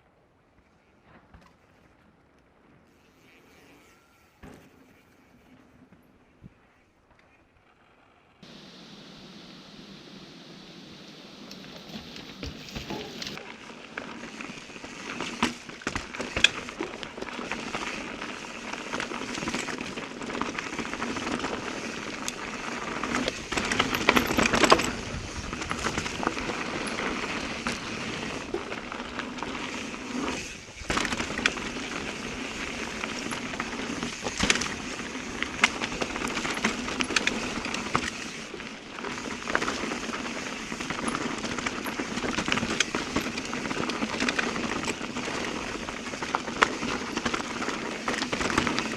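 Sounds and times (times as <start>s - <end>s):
tyres crunching on dirt: 11.0s - 48.9s
bike clicking and rattling: 11.4s - 48.9s.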